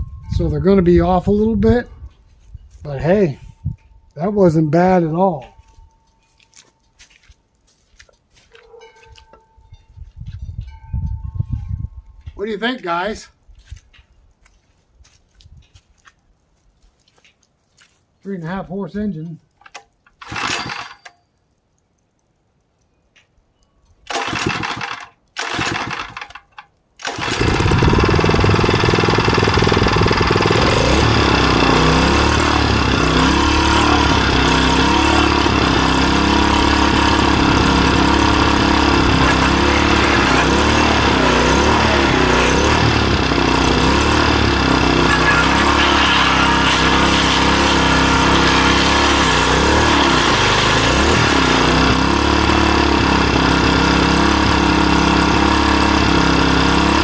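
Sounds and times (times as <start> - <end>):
engine pull-start cord: 19.6 - 21.2, 24.1 - 57.0
small gas engine running: 20.2 - 20.9, 24.1 - 26.4, 27.0 - 57.0.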